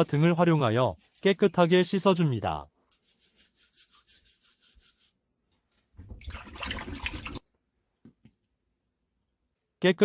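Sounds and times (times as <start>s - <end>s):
hand rubbing lemon: 0.0s - 5.2s
water running: 6.0s - 7.4s.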